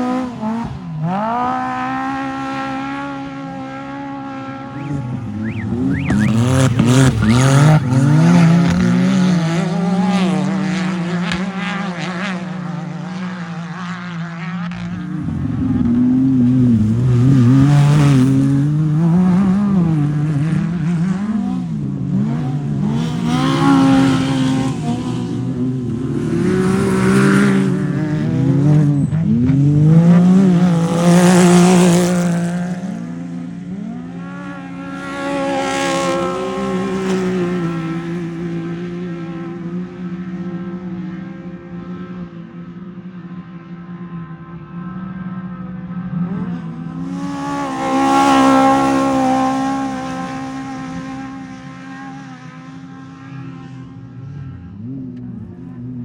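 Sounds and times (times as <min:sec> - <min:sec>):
race vehicle engines revving: 0:00.0 - 0:56.0.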